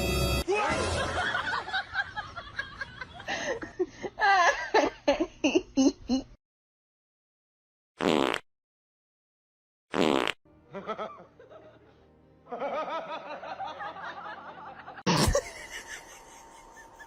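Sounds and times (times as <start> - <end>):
music: 0.0 - 1.3, 10.4 - 17.0
laughter: 0.5 - 6.3, 10.7 - 17.0.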